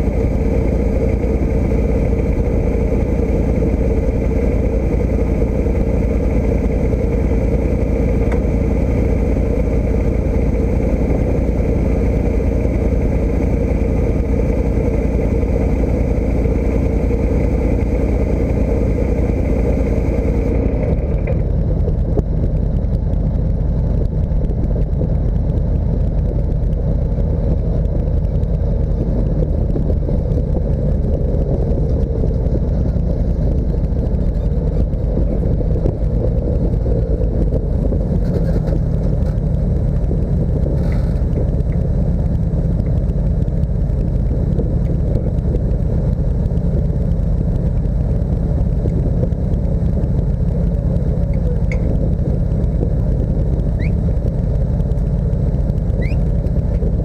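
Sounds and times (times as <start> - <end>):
motor vehicle engine and road noise: 0.0 - 57.0.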